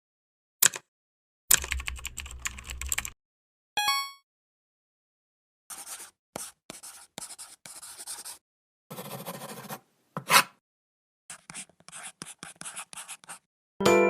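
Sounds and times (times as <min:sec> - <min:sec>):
pencil scratching on paper: 0:05.7 - 0:10.6, 0:11.3 - 0:13.5.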